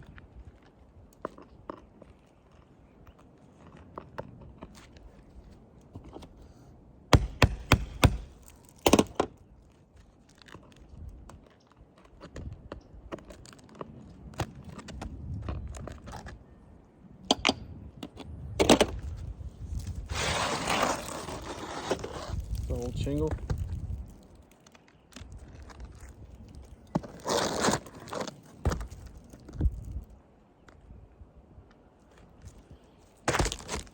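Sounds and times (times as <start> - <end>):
nail knocking and cracking: 7.1 - 9.3
scraping rustle: 19.2 - 30.1.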